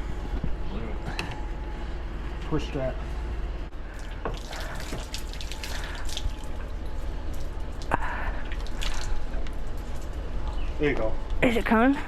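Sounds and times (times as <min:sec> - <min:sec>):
steady low hum: 0:00.0 - 0:12.0
water dripping and splashing: 0:03.8 - 0:10.6.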